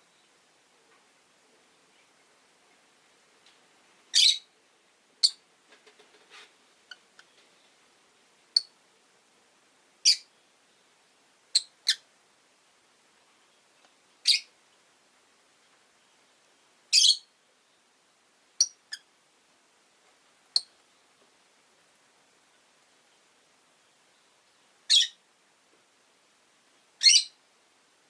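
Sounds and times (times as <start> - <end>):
lovebirds chirping: 4.1 - 4.6, 5.2 - 5.4, 10.0 - 12.1, 13.4 - 14.9, 16.0 - 17.9, 18.6 - 19.1, 20.5 - 21.2, 23.0 - 25.2, 26.7 - 27.4
soft bird chatter and clicks: 5.2 - 6.3, 6.9 - 7.8, 20.0 - 21.4.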